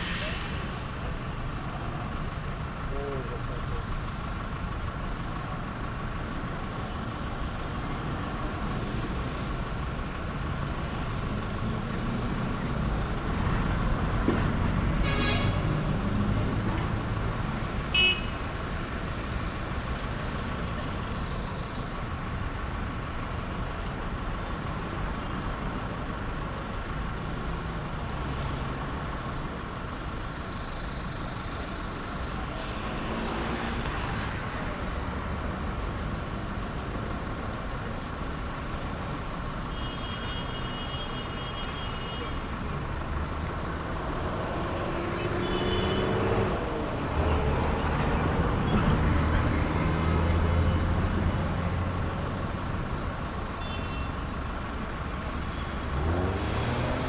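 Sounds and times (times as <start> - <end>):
rumble of cars and trucks: 0.0 - 57.0
car horn toot: 15.0 - 15.8, 17.9 - 18.5, 45.2 - 46.2, 53.6 - 54.2.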